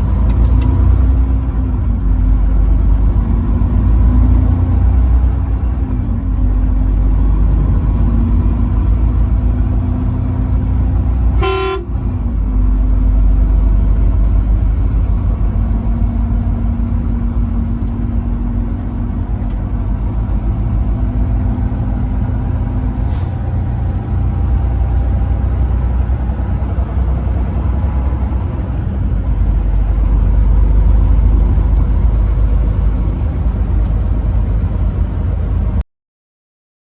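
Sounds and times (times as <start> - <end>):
truck engine and road drone: 0.0 - 35.8
truck horn toot: 11.2 - 12.2.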